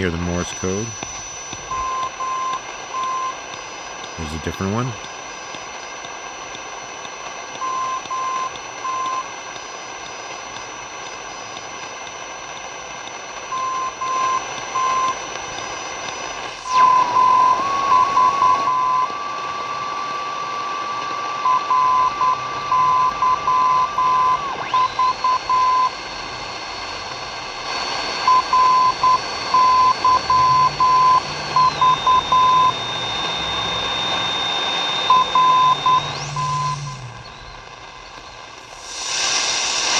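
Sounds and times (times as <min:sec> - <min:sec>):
radio tuning sweep: 0:00.0 - 0:02.3, 0:04.1 - 0:05.0, 0:13.7 - 0:39.9
radio static hiss: 0:00.0 - 0:39.9
morse code beeping: 0:04.2 - 0:05.0, 0:21.4 - 0:38.7
steady tone: 0:19.8 - 0:39.9
faint high whistle: 0:21.4 - 0:39.9.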